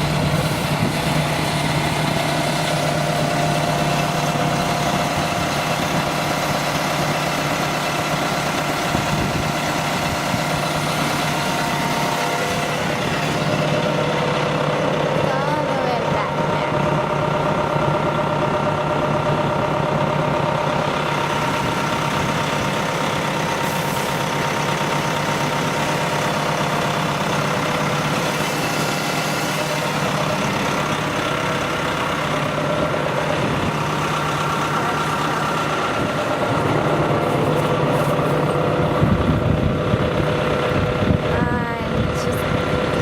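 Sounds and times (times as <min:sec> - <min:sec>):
large vehicle engine idling: 0:00.0 - 0:43.0.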